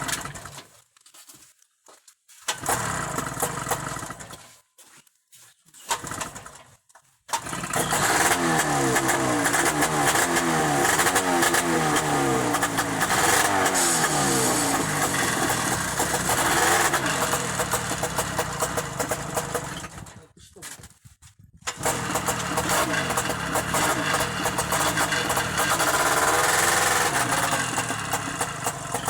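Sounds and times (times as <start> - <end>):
snowmobile engine revving: 2.5 - 4.3, 7.4 - 20.0, 21.7 - 29.0.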